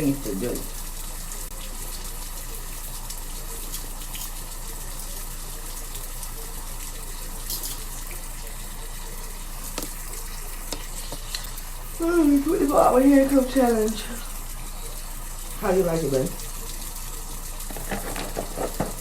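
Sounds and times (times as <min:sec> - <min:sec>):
tap running into a sink: 0:02.7 - 0:11.6, 0:15.6 - 0:19.0.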